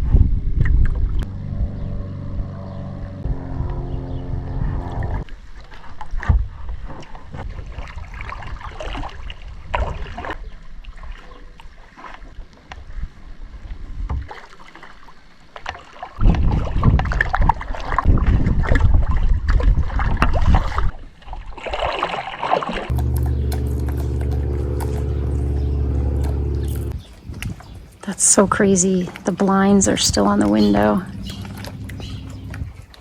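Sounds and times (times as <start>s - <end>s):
wind buffeting microphone: 0.0s - 2.5s, 16.2s - 20.9s, 22.9s - 33.0s
paddle splashing in water: 14.1s - 27.6s, 30.5s - 33.0s.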